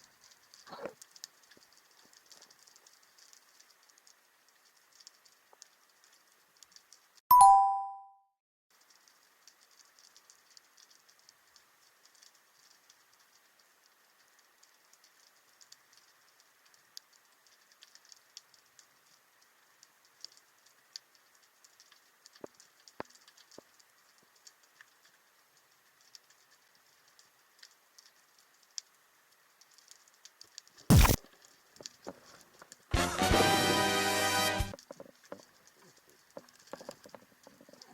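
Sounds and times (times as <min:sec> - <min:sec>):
loud hit: 0:30.9 - 0:31.2.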